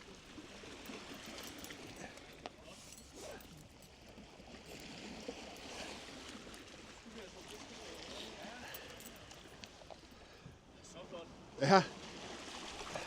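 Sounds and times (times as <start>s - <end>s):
water splashing and trickling: 0.0s - 10.4s.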